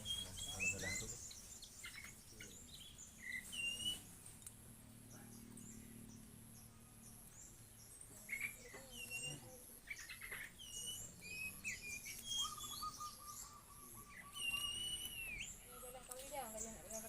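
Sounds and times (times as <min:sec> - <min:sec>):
bird fast trill: 0:00.0 - 0:04.1, 0:05.2 - 0:17.0
small birds chirping and whistling: 0:00.0 - 0:17.0.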